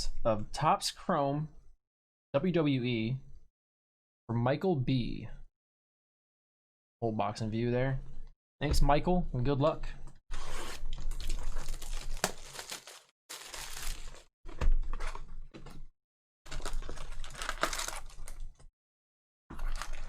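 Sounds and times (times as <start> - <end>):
wrapper and cardboard tearing: 10.3 - 14.3, 16.5 - 18.6.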